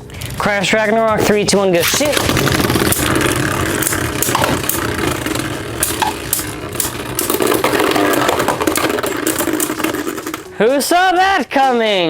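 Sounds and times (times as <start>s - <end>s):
spinning tops whirring: 0.0s - 10.6s
spinning tops clashing clicks: 1.8s - 10.6s.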